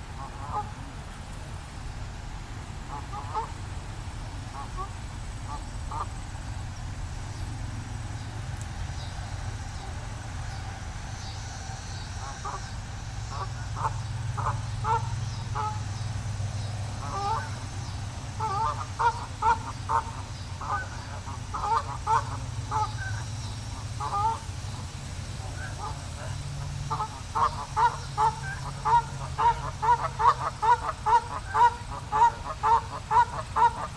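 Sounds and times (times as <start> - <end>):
geese honking: 0.0 - 0.8, 2.9 - 3.6, 8.4 - 33.9.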